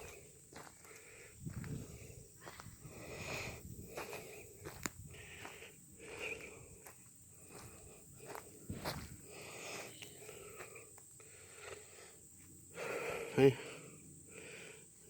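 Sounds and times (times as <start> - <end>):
soft footsteps: 0.0 - 10.8.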